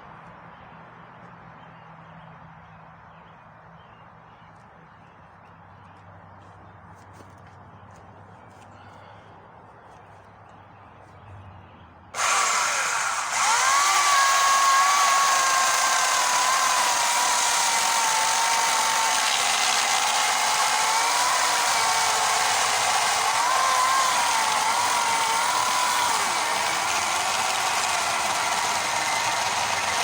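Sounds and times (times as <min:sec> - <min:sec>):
electric chainsaw cutting wood: 0:12.2 - 0:30.0.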